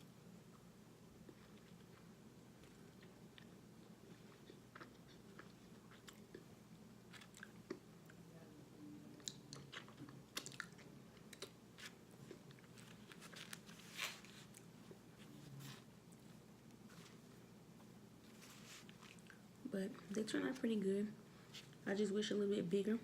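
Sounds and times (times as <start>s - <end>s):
crunching and chewing: 1.2s - 8.2s, 9.1s - 14.8s, 18.2s - 20.1s.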